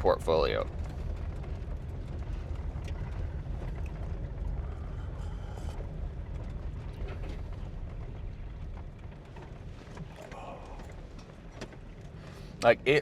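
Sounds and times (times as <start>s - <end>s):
van road rumble: 0.0s - 13.0s.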